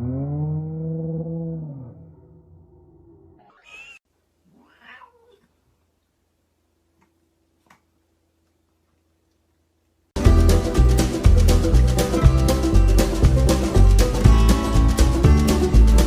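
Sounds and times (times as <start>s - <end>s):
cat meowing: 3.4s - 5.6s.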